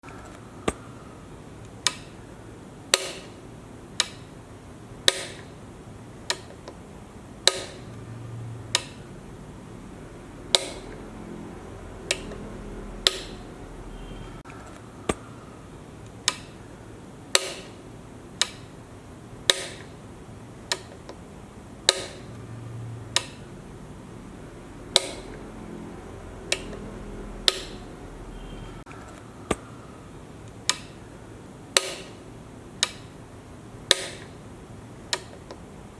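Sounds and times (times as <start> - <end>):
power switch clicking: 4.0 - 4.3, 7.4 - 8.0, 8.7 - 9.0, 12.1 - 13.4, 16.2 - 16.5, 18.4 - 18.7, 20.7 - 21.2, 21.8 - 22.4, 23.1 - 23.5, 24.9 - 25.4, 26.4 - 27.8, 30.5 - 31.0, 32.8 - 33.1.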